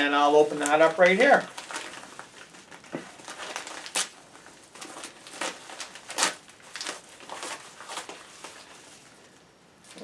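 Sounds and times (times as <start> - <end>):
packaging rustling and tearing: 0.0 - 9.2.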